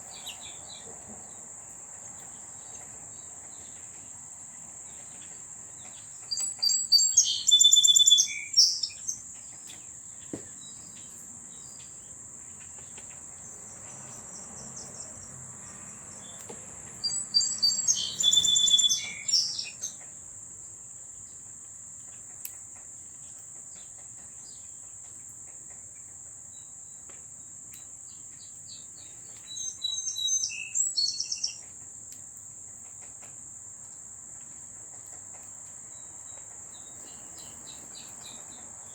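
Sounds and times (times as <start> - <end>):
insects trilling: 0.0 - 38.9
songbird warbling: 6.2 - 9.2, 17.0 - 20.0, 29.4 - 31.6.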